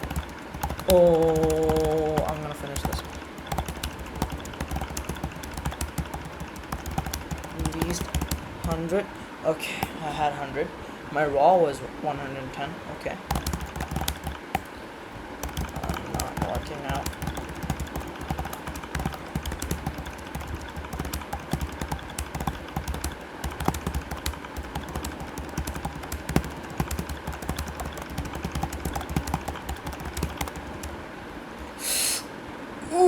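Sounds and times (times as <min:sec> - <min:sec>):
fast keyboard typing: 0:00.0 - 0:10.4, 0:13.2 - 0:31.2
brief hiss: 0:31.8 - 0:32.3.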